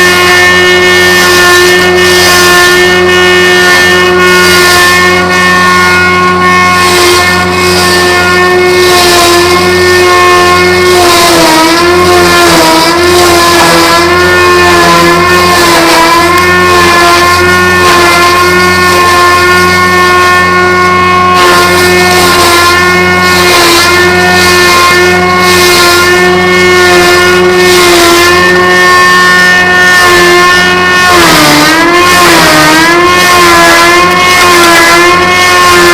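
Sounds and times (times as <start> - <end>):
log-rounding machine whining: 0.0 - 35.9.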